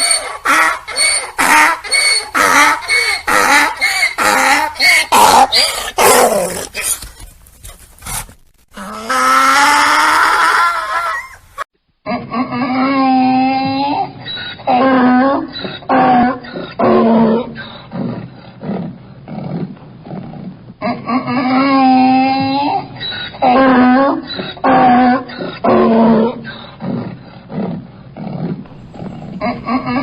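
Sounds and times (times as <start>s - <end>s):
donkey braying: 0.0s - 7.2s, 8.8s - 17.2s, 28.7s - 30.0s.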